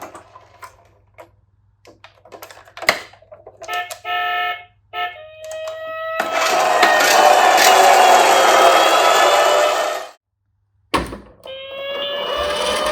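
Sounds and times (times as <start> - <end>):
toy siren wailing: 3.6 - 9.2, 11.4 - 12.9.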